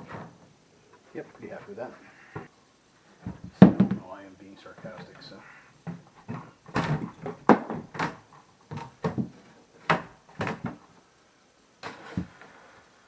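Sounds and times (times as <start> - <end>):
wooden panels knocking: 3.2 - 4.1, 5.8 - 10.9.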